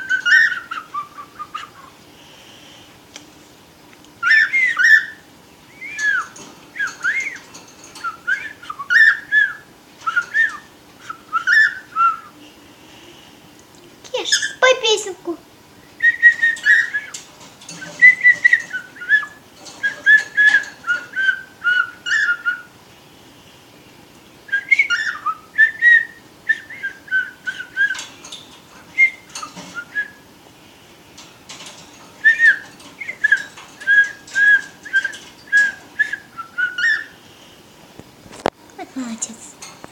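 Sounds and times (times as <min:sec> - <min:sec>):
cockatiel whistling a tune: 0:00.0 - 0:01.9, 0:04.2 - 0:12.4, 0:16.0 - 0:22.7, 0:24.5 - 0:30.2, 0:32.2 - 0:37.2.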